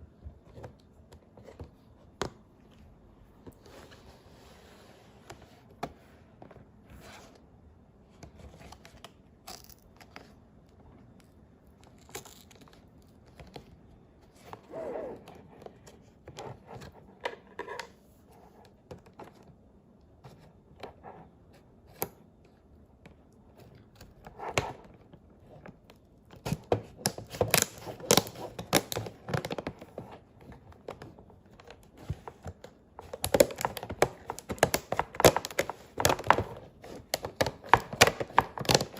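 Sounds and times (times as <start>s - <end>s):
packaging tearing and crinkling: 26.5s - 29.9s, 33.0s - 38.9s.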